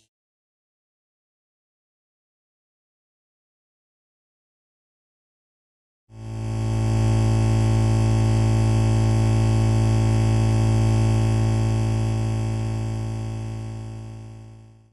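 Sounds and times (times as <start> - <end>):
loud electrical buzz: 6.2 - 14.9.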